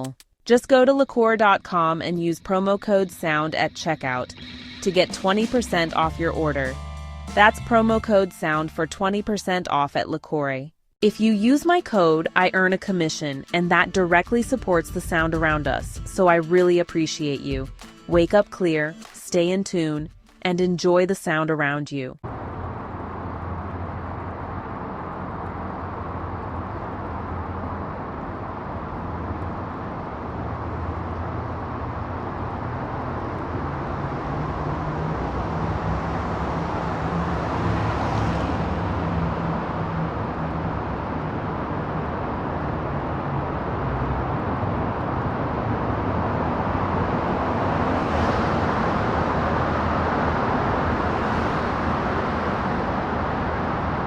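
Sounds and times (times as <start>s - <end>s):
traffic rumble and hiss: 22.2s - 54.0s
vehicles swishing past: 22.2s - 54.0s.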